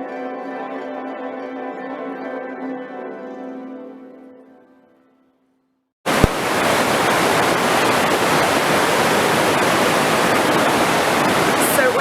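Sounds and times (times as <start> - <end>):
rushing water: 6.1 - 12.0.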